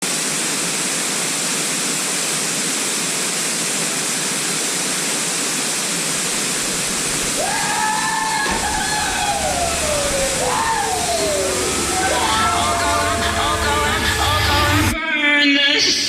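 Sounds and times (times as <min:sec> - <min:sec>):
waterfall roaring: 0:00.0 - 0:14.9
gliding tone: 0:08.4 - 0:15.0.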